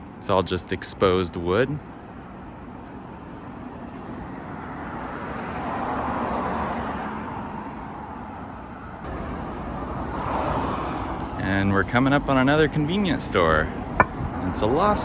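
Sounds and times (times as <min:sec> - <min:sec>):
car driving past: 0:08.9 - 0:11.6.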